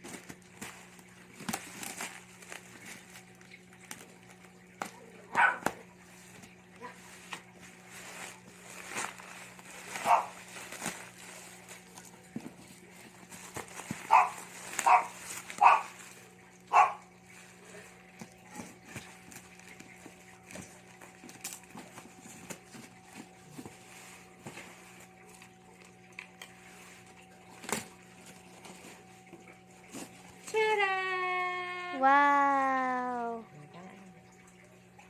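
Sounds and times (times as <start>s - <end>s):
dog barking: 5.3s - 5.8s, 10.0s - 10.4s, 14.1s - 16.0s, 16.7s - 17.1s.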